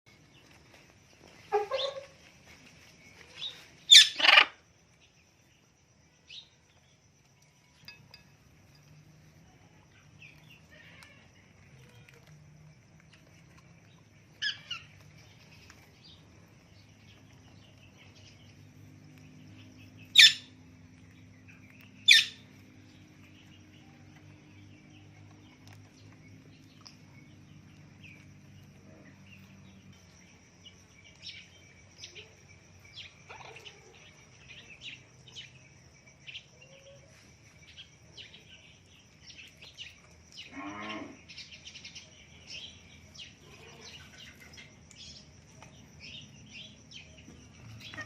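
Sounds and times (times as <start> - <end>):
parrot squawking: 3.9 - 4.6.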